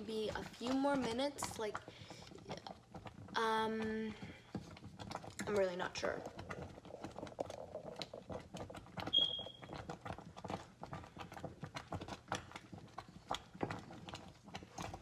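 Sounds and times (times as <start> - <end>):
oats popping in a saucepan: 0.0 - 15.0
short high beep: 9.1 - 9.4.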